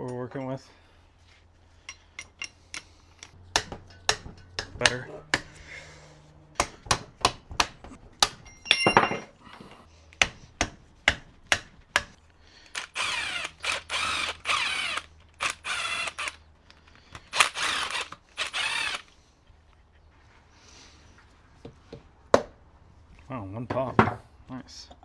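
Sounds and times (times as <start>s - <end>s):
metal tools clicking on engine: 1.8s - 5.6s
cordless power tool spinning: 12.6s - 16.5s, 17.2s - 19.2s.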